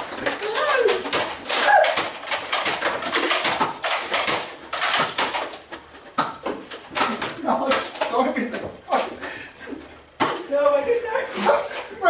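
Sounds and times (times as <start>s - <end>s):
toy blasters firing clacks: 0.0s - 5.6s
person shouting: 0.4s - 2.0s.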